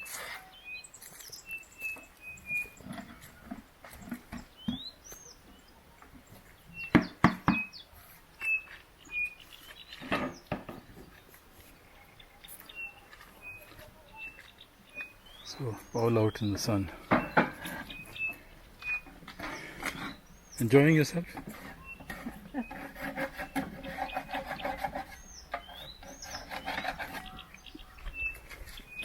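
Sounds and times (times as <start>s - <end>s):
birds chirping: 0.0s - 29.0s
wooden beehive frames knocking: 6.8s - 7.7s, 10.0s - 11.2s, 17.0s - 18.3s.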